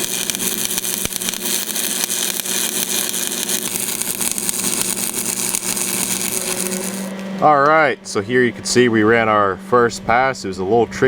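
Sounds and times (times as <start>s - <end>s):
welding arc crackling sizzle: 0.0s - 7.9s.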